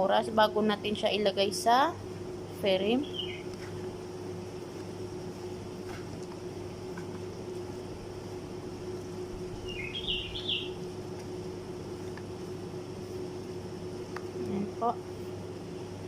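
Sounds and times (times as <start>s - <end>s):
droning hum: 0.0s - 16.0s
bird chirps: 3.0s - 3.5s, 9.6s - 10.8s.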